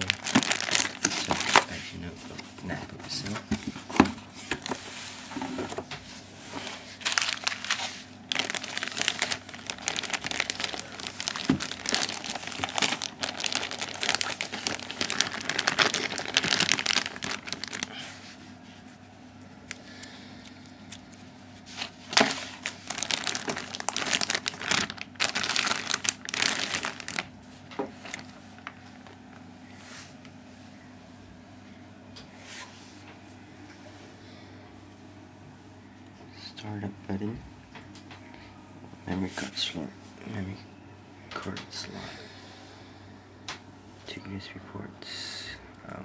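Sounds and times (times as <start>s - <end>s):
packaging wrap crinkling: 0.0s - 1.8s, 7.0s - 18.0s, 19.6s - 29.5s.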